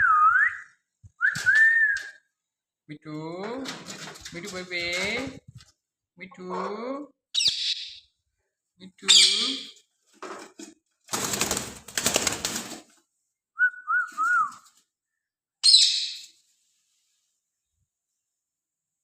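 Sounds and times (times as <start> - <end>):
wing flapping: 11.1 - 13.0.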